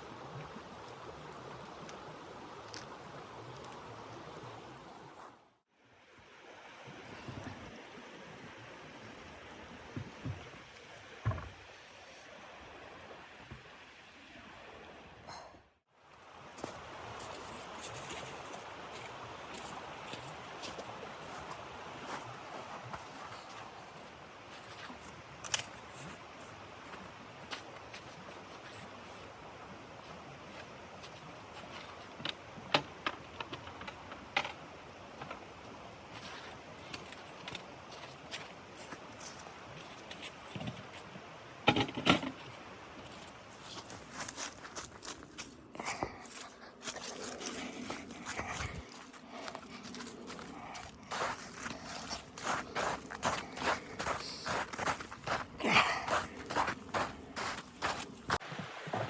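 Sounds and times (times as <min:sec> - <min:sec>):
background hiss: 0:16.1 - 0:59.0.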